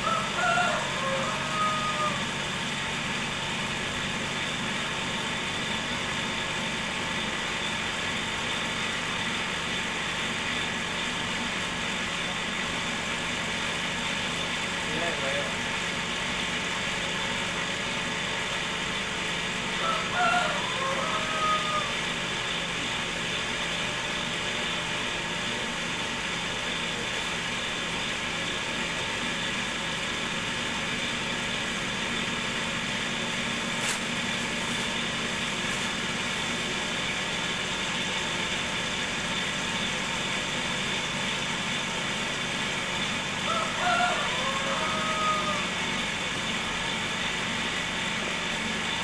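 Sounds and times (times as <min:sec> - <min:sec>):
rooster crowing: 0:00.0 - 0:02.5, 0:19.7 - 0:22.6, 0:43.4 - 0:46.2
motor humming: 0:00.0 - 0:49.0.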